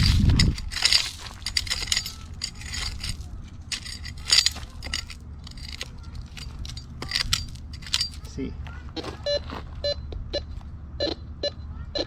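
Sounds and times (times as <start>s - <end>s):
gravel being scraped: 0.0s - 8.3s
stones clinking: 0.0s - 8.4s.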